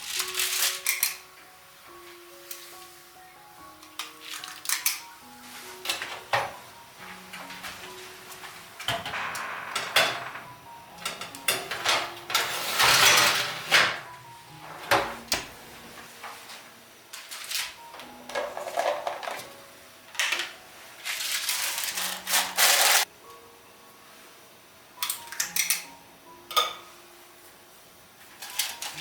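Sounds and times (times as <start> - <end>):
soft background music: 0.0 - 29.0
utensils and dishes scraping: 11.0 - 14.0, 17.3 - 19.5, 21.0 - 23.1, 28.4 - 29.0.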